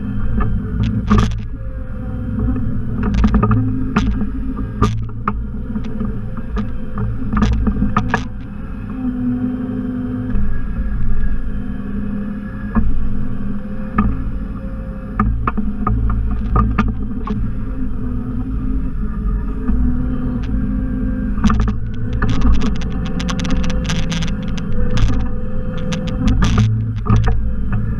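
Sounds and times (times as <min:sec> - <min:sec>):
garden tractor engine running: 0:00.0 - 0:08.6, 0:15.4 - 0:27.9.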